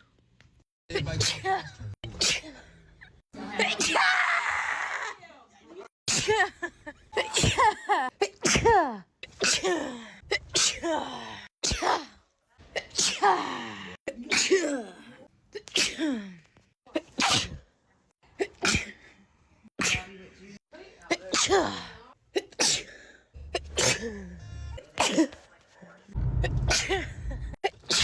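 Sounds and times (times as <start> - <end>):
person sneezing: 7.2 - 12.1, 12.8 - 14.9, 17.0 - 17.6, 18.4 - 19.1, 19.8 - 20.1, 21.2 - 24.4.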